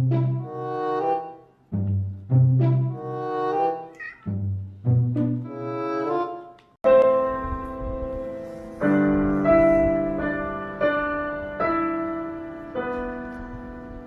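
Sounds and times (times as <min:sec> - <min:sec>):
piano chords ringing: 0:06.8 - 0:14.0.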